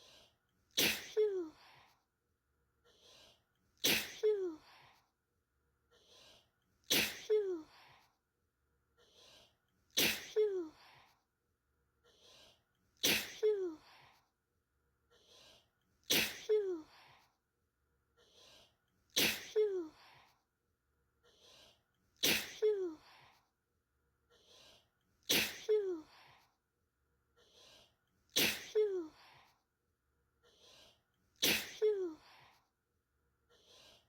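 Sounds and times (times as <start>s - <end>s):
person sneezing: 0.7s - 1.8s, 3.8s - 4.8s, 6.8s - 8.0s, 9.9s - 11.0s, 13.0s - 14.1s, 16.0s - 17.1s, 19.1s - 20.2s, 22.2s - 23.3s, 25.2s - 26.3s, 28.3s - 29.4s, 31.4s - 32.5s.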